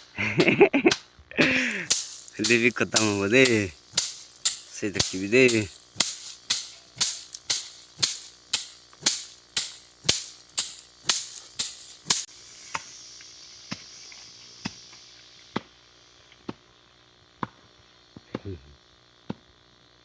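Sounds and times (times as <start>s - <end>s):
plants being beaten: 0.0s - 12.3s
scattered clicks: 0.4s - 12.3s
faint hiss: 1.3s - 16.5s.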